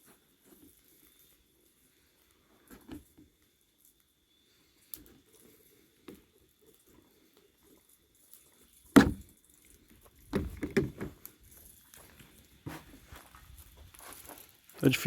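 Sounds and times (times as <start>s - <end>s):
knocks and clatter of objects: 8.9s - 9.3s, 10.3s - 11.2s.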